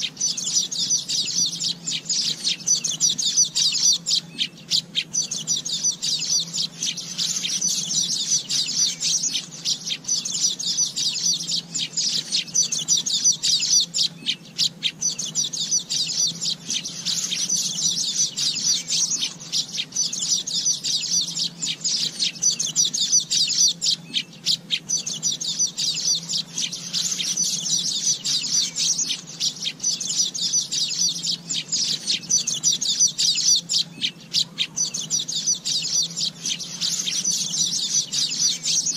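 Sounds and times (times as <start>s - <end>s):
bird chattering chirps and trills: 0.0s - 38.9s.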